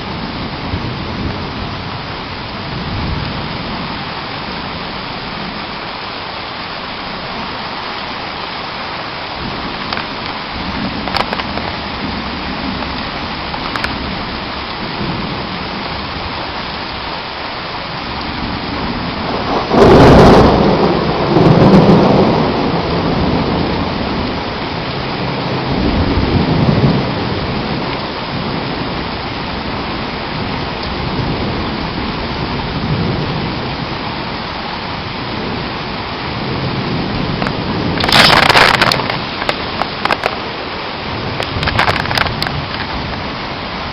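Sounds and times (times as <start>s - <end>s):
heavy rain pouring: 0.0s - 43.9s
thunder rumbling: 8.8s - 17.0s, 17.8s - 43.9s.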